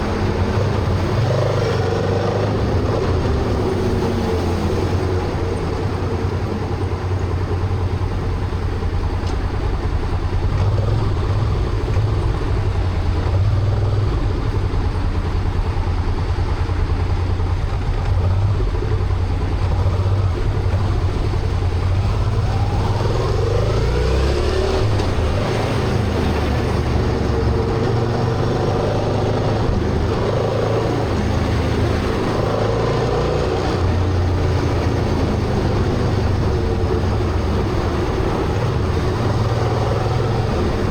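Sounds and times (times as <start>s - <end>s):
motorcycle engine hum: 0.0s - 40.9s
road and wind noise: 0.0s - 40.9s
rising whine: 8.9s - 40.9s.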